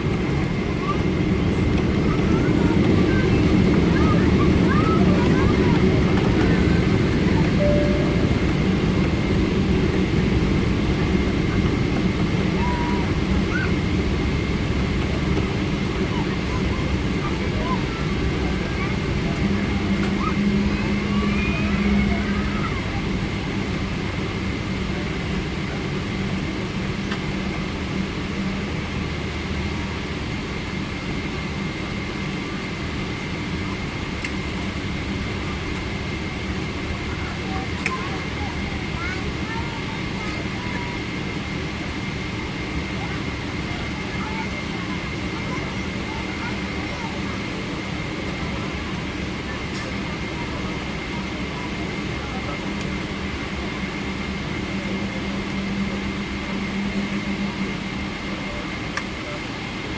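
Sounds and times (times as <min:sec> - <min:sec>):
airliner engines rumbling: 0:00.0 - 0:59.9
faint high tone: 0:07.6 - 0:09.1.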